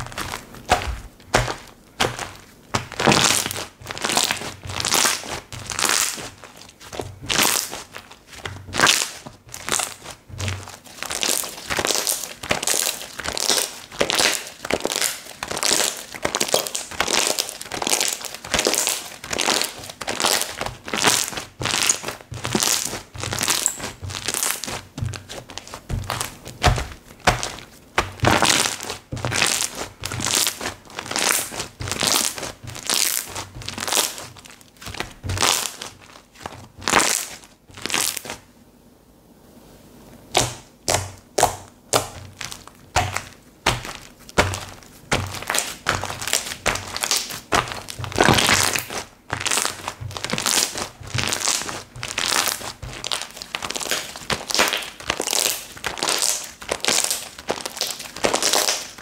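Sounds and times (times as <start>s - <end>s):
slime squelching by hand: 0.0s - 38.4s, 40.3s - 59.0s.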